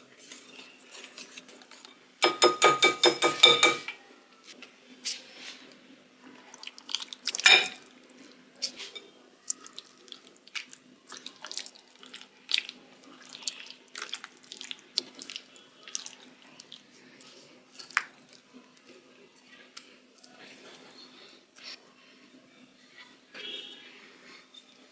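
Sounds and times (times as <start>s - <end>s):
kitchen clicks and taps: 1.8s - 4.0s.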